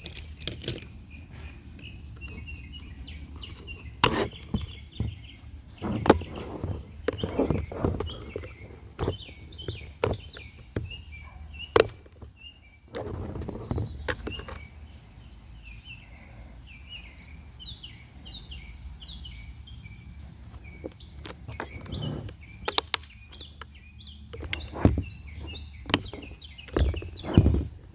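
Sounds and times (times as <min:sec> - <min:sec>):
clicks and knocks of handling: 0:00.0 - 0:14.7, 0:20.5 - 0:27.9
rustling: 0:00.0 - 0:14.7, 0:24.3 - 0:27.9
small birds chirping: 0:00.0 - 0:27.9.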